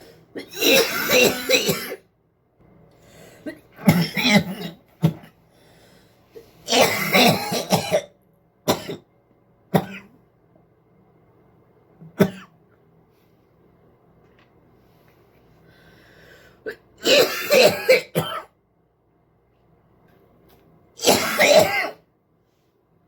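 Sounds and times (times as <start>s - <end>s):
person coughing: 0.3s - 2.1s, 3.4s - 5.4s, 6.6s - 9.1s, 9.7s - 10.2s, 12.1s - 12.6s, 16.7s - 18.5s, 21.0s - 22.0s.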